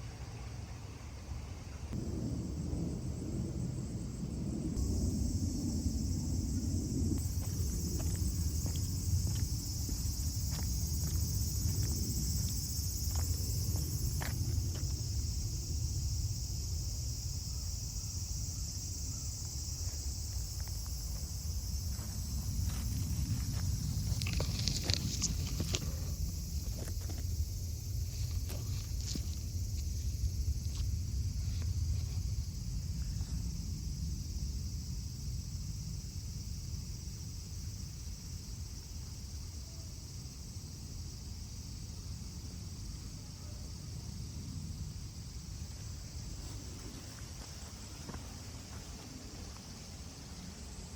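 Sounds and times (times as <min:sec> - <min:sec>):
insects chirring chorus: 0:00.0 - 0:50.9
low rumble: 0:01.9 - 0:17.4.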